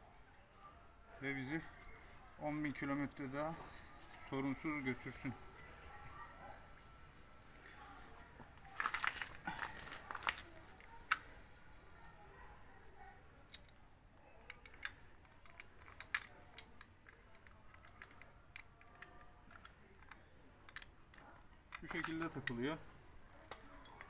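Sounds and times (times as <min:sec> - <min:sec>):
metal clicks of brake pads: 0:09.0 - 0:11.3, 0:14.5 - 0:22.7.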